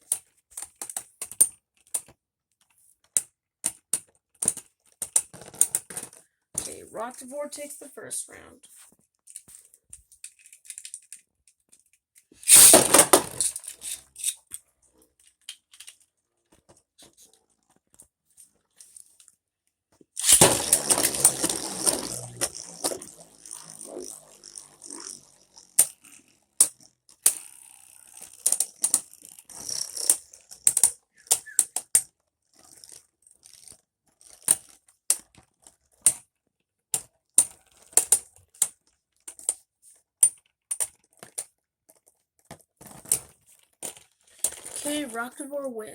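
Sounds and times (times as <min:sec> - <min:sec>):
short loud rattle: 0:12.4 - 0:14.0
spinning tops clacking: 0:12.4 - 0:14.3, 0:20.2 - 0:31.7
spinning tops whirring: 0:12.4 - 0:14.3, 0:20.2 - 0:31.8.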